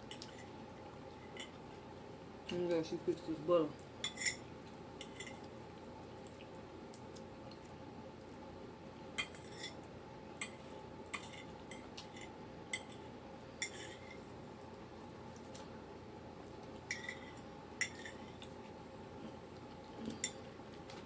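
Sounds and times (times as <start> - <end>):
faint steady hum: 0.0 - 21.0
cutlery clinking against dish: 4.0 - 5.4, 9.2 - 9.8, 10.4 - 14.2, 16.9 - 18.2.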